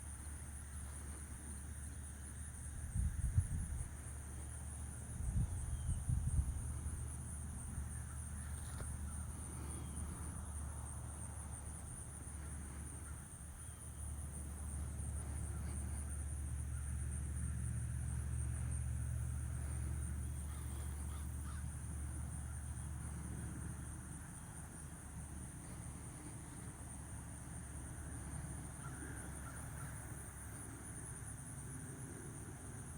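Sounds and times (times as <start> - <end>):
insects chirring: 0.0 - 32.9
low rumble in gusts: 2.6 - 4.2, 5.0 - 8.1.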